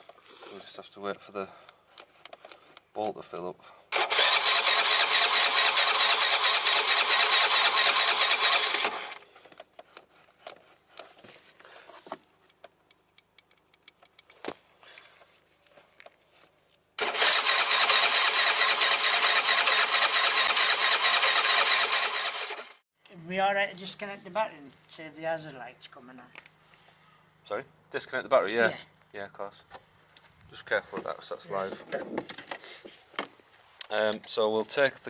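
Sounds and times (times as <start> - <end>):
electric starter cranking engine: 3.9 - 9.4, 17.0 - 22.8.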